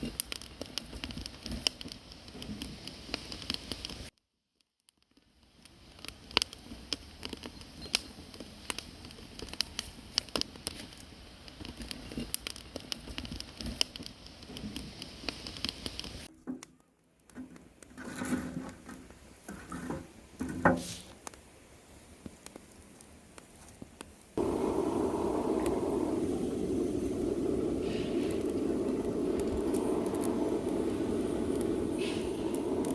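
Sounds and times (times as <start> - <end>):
firewood crackling and popping: 0.0 - 20.5, 21.1 - 32.9.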